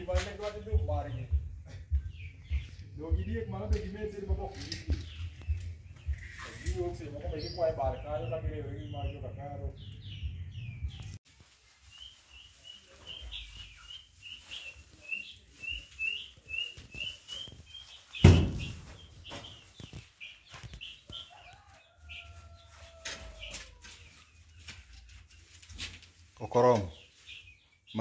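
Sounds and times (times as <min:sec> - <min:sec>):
poultry peeping: 0:00.0 - 0:28.0
loud thump: 0:18.2 - 0:18.9.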